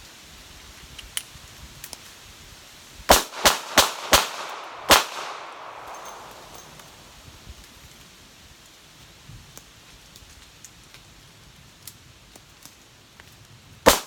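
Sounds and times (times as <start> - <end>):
revolver gunshots: 3.1 - 7.0.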